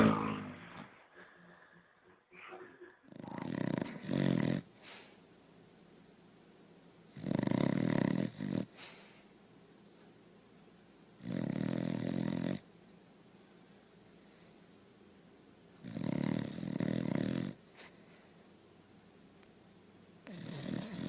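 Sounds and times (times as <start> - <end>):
dog snoring: 0.0 - 0.8, 3.1 - 5.1, 7.1 - 9.0, 11.2 - 12.7, 15.8 - 17.9, 20.2 - 21.0.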